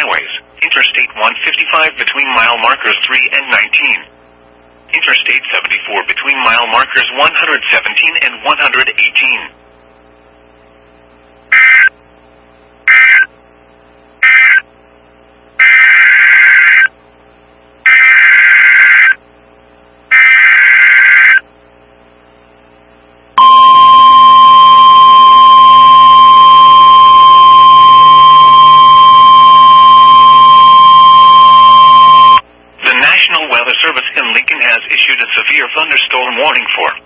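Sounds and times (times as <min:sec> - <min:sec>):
digital data bursts: 0:11.5 - 0:11.9, 0:12.9 - 0:13.3, 0:14.2 - 0:14.6
steady alarm tone: 0:11.5 - 0:11.9, 0:12.9 - 0:13.3, 0:14.2 - 0:14.7, 0:15.6 - 0:16.9, 0:17.8 - 0:19.2, 0:20.1 - 0:21.4, 0:23.4 - 0:32.4.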